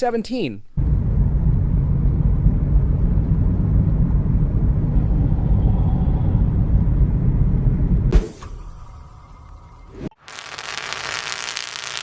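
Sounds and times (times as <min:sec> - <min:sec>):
car driving on freeway: 0:00.8 - 0:08.1.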